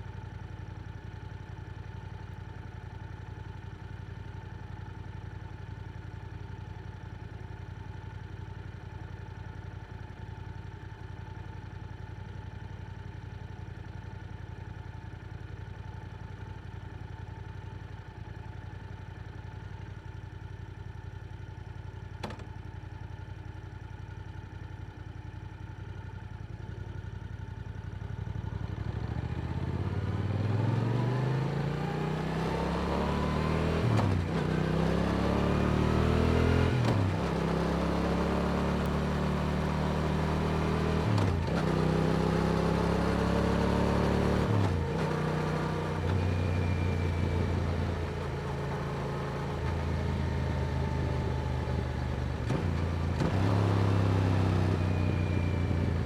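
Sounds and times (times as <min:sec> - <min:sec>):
motorcycle engine idling: 0:00.0 - 0:29.4
motorcycle pulling away: 0:28.6 - 0:56.0.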